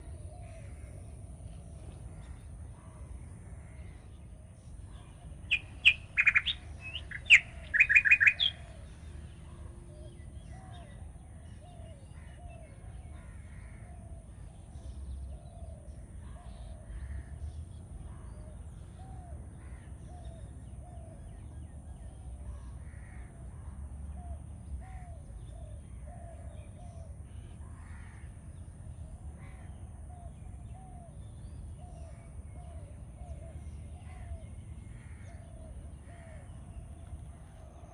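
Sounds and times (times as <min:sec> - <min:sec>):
bird calling: 0:04.9 - 0:11.0.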